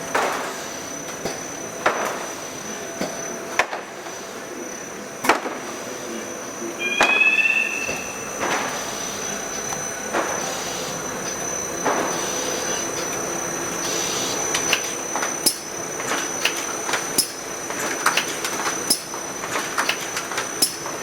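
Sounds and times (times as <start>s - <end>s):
machine running with high whine: 6.1s - 19.5s
sharp mechanical clacks: 18.0s - 20.9s.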